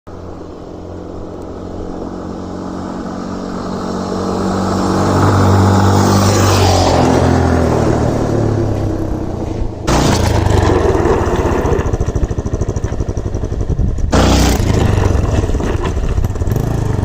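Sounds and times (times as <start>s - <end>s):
motorcycle engine running: 9.9s - 17.0s.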